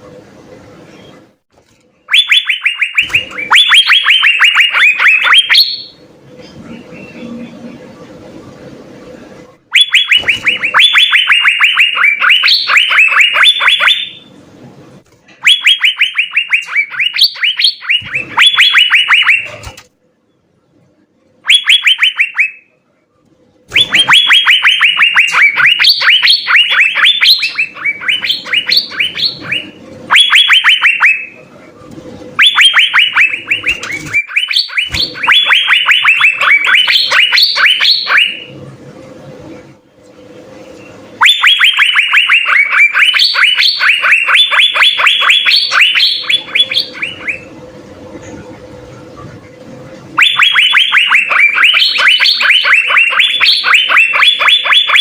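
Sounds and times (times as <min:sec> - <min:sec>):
bird singing sharp repeated notes: 0:02.0 - 0:06.0, 0:09.7 - 0:14.3, 0:15.4 - 0:19.8, 0:21.4 - 0:22.7, 0:23.7 - 0:31.5, 0:32.4 - 0:38.6, 0:40.8 - 0:47.6, 0:50.2 - 0:55.0.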